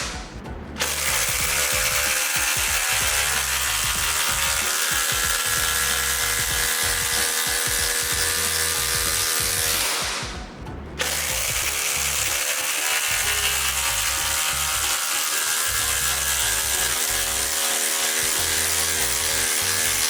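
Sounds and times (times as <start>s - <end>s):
background music: 0.0s - 20.0s
impact driver driving bolt: 0.8s - 10.4s.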